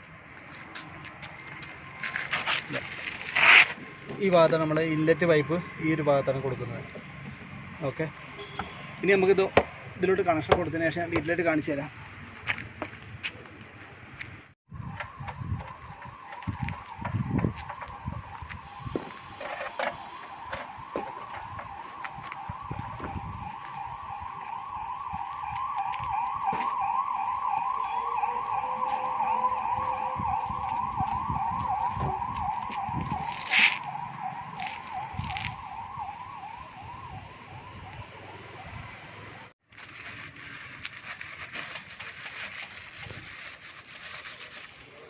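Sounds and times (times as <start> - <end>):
emergency siren yelping: 14.7 - 39.4.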